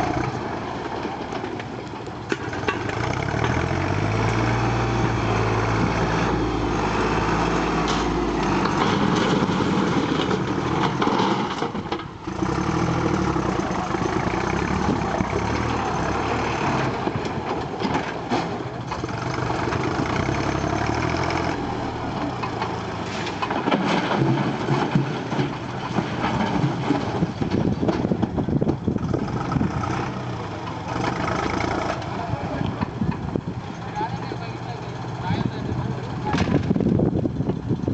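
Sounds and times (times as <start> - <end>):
diesel engine running: 0.0 - 37.9
sharp knocks and clatter: 2.3 - 3.7, 7.7 - 12.6, 17.0 - 20.1, 22.2 - 29.1.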